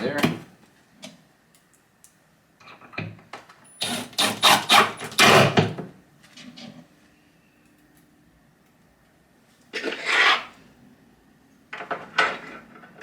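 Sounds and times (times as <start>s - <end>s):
screws grinding into wood: 3.8s - 5.6s.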